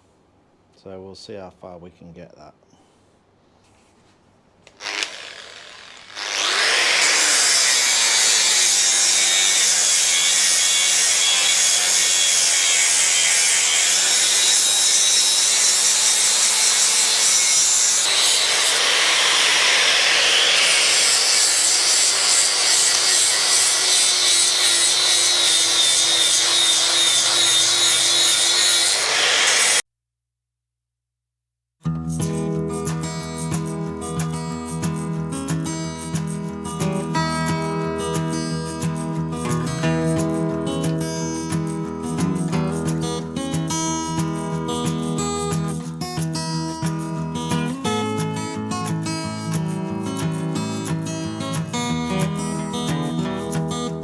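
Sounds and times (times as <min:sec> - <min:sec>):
power tool grinding steel: 0:04.8 - 0:29.8.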